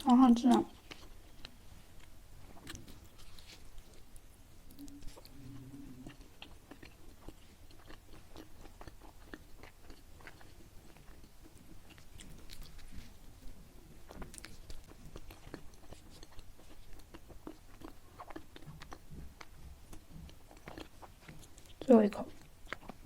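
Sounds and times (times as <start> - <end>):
person chewing sticky food: 0.0 - 23.0.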